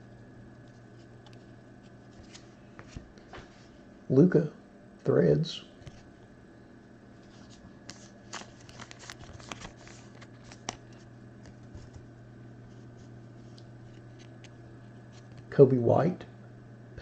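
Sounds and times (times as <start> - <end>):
steady low hum: 0.0 - 17.0
cards sliding and rustling: 1.0 - 3.5, 7.2 - 14.5.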